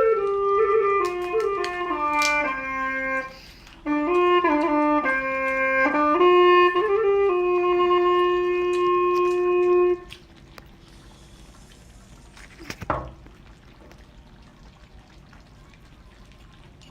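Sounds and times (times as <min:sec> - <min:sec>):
background music with woodwind: 0:00.0 - 0:10.2.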